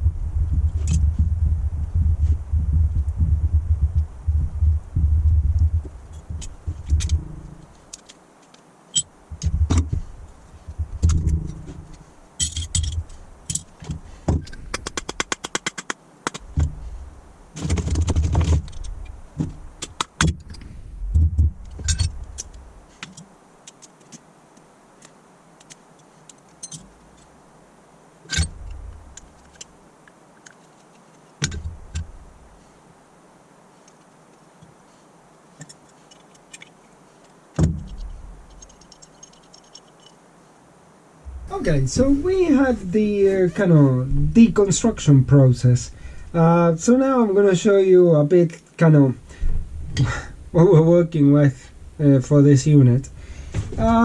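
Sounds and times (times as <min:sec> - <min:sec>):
metal parts and tools clinking: 0:11.1 - 0:14.7, 0:21.6 - 0:24.2, 0:25.6 - 0:27.3, 0:28.3 - 0:29.7, 0:35.6 - 0:36.9, 0:37.8 - 0:40.2.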